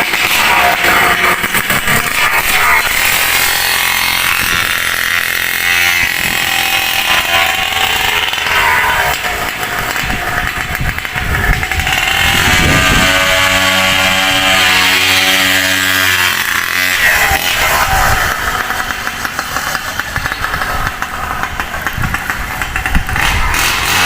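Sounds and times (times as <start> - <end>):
scooter engine revving: 0.0 - 24.0.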